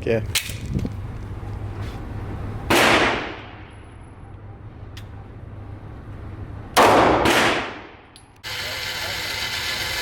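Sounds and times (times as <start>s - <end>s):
pistol shots with echo: 2.7s - 3.6s, 6.8s - 8.0s.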